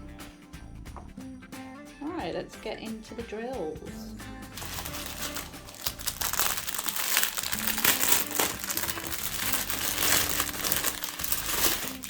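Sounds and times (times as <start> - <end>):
plastic packets crinkling: 4.5 - 12.0.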